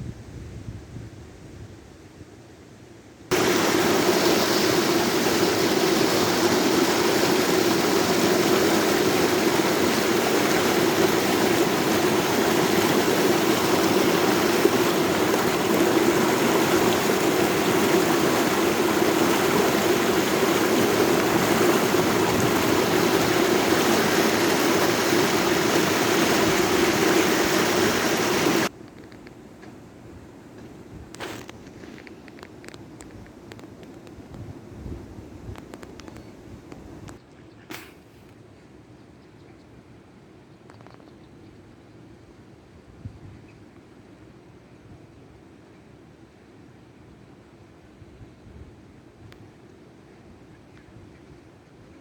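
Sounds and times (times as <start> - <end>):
stream water rushing: 3.3 - 28.7.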